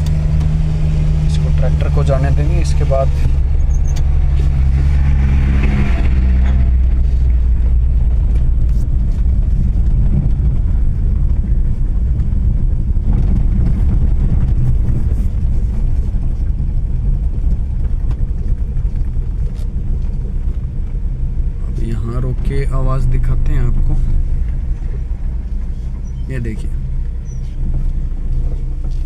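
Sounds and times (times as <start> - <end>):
car rumbling over rough road: 0.0 - 29.0
tractor engine droning: 0.0 - 29.0.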